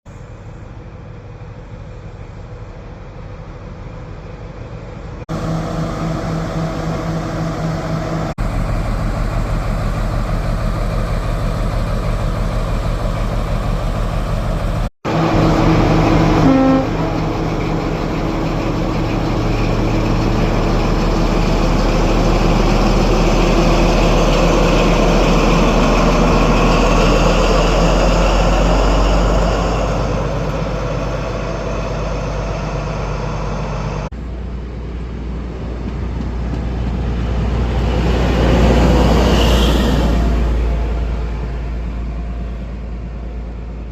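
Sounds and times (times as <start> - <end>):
train diesel engines running: 0.1 - 43.9
train horn toot: 15.3 - 17.2, 39.2 - 40.4.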